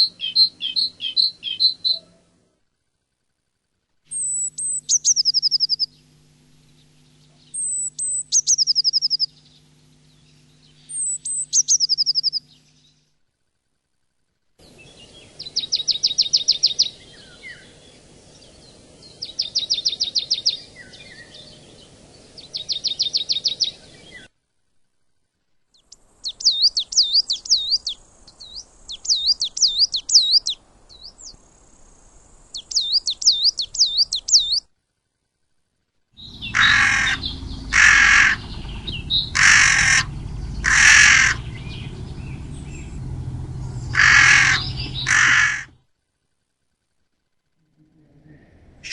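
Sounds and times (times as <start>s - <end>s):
bird singing high whistles: 4.1s - 5.9s, 7.5s - 9.3s, 10.9s - 12.4s, 26.3s - 31.1s, 32.6s - 34.6s
crow cawing loudly: 36.4s - 41.6s, 43.9s - 45.8s.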